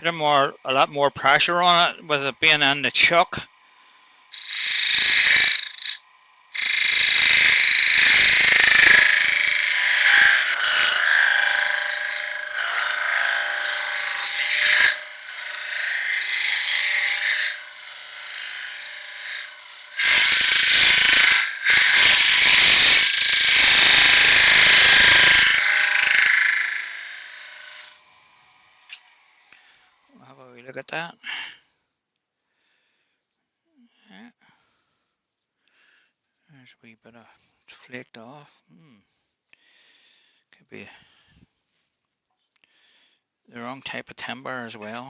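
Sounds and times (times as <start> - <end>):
lathe tool scraping wood: 0.0 - 30.0
lathe hum: 0.0 - 30.3.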